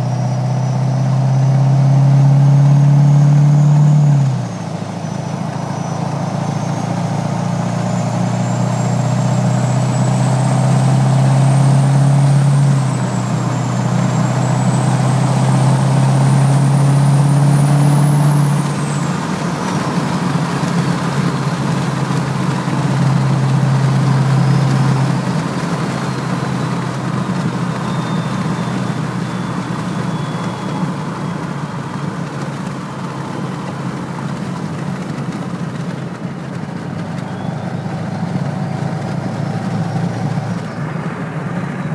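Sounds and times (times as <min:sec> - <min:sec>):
diesel engine drone: 0:00.0 - 0:41.9
turbo whistle: 0:22.6 - 0:32.1, 0:37.1 - 0:40.7.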